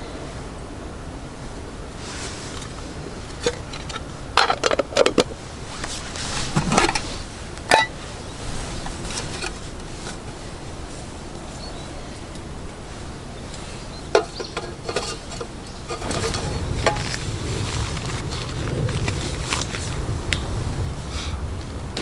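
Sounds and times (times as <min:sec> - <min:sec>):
steady background hiss: 0:00.0 - 0:22.0.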